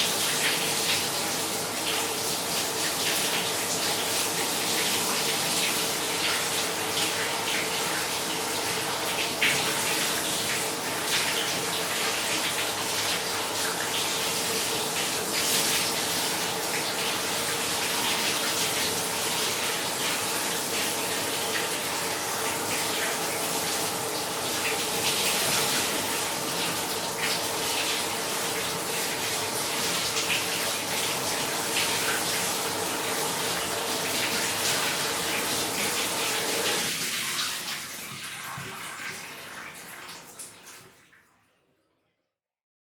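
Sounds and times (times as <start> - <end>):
shower spray splashing: 0.0 - 37.7.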